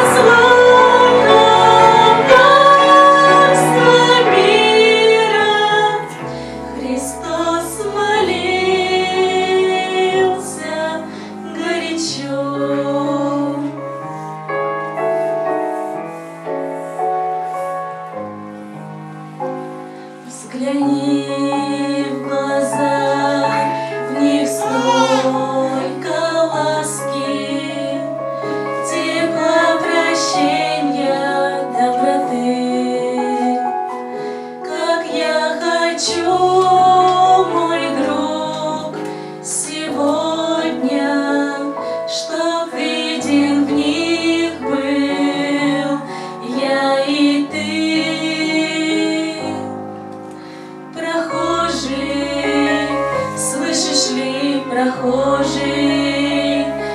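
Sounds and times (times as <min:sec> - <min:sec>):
girls singing a hymn: 0:00.0 - 0:14.3, 0:19.7 - 0:56.9
held instrumental accompaniment: 0:00.0 - 0:56.9.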